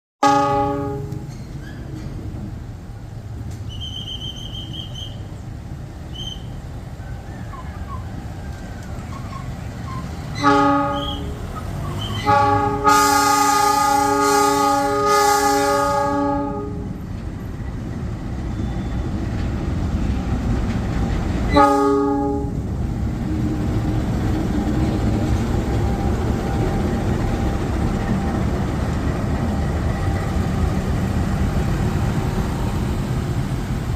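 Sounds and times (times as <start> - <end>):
locomotive air horn blasts: 0.2 - 1.3, 10.3 - 17.0, 21.5 - 22.6.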